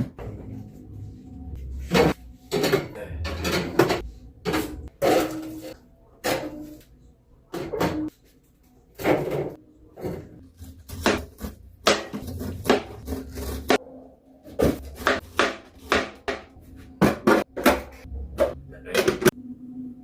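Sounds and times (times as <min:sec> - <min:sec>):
containers clattering on fridge shelves: 0:01.9 - 0:06.7.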